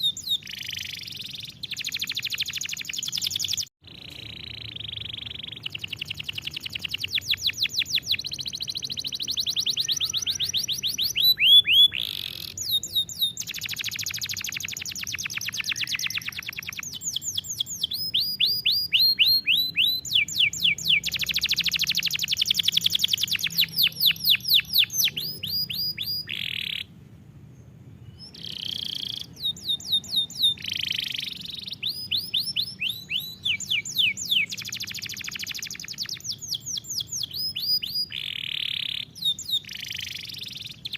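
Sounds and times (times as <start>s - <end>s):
canary singing trills: 0.0s - 27.0s, 27.6s - 40.9s.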